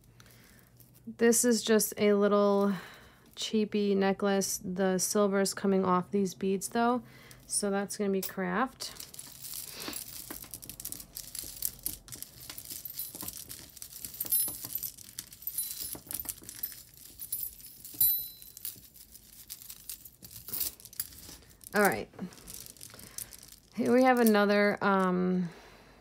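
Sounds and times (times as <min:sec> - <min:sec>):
jewelry clinking and jingling: 0:07.3 - 0:25.2.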